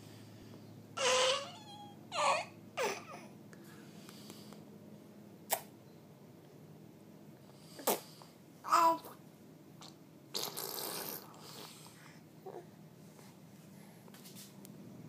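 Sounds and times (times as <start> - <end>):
baby squealing: 1.0 - 3.2
baby spluttering: 9.8 - 11.7.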